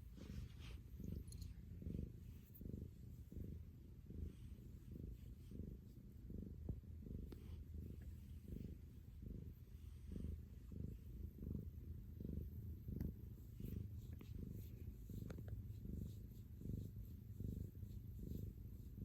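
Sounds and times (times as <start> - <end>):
cat purring: 0.0 - 19.0.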